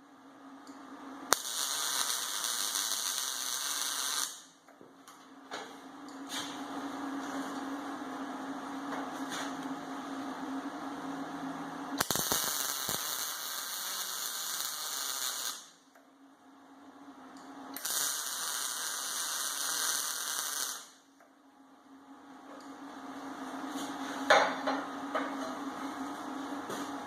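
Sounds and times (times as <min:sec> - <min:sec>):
steady hum: 0:00.0 - 0:27.0
welder crackling: 0:01.3 - 0:04.5, 0:12.0 - 0:15.8, 0:17.8 - 0:21.0.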